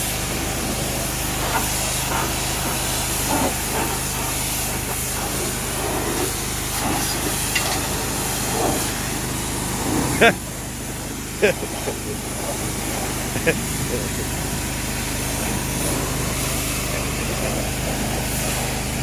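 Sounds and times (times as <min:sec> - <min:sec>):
pressure washer spray hissing: 0:00.0 - 0:19.0
motor humming: 0:04.7 - 0:19.0.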